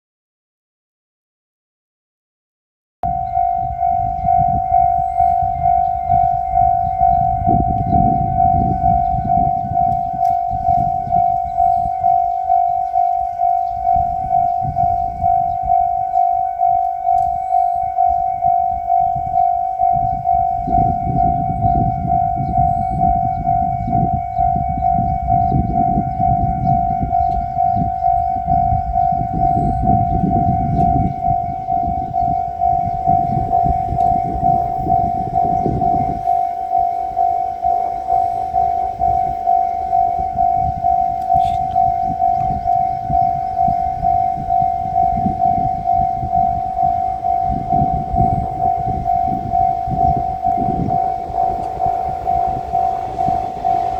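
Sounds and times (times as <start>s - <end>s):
level crossing electronic bell: 3.0s - 53.9s
diesel train rumbling past: 3.3s - 53.9s.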